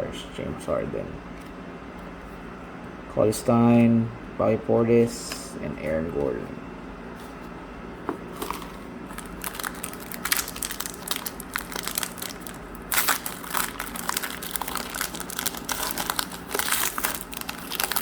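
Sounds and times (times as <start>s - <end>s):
plastic foil wrapper crinkling: 8.4s - 18.0s.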